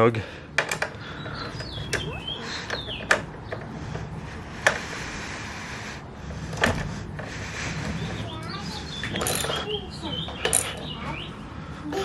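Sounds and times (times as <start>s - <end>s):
high chirps: 1.2s - 3.2s
metal tools clinking: 9.1s - 9.8s, 10.4s - 10.9s.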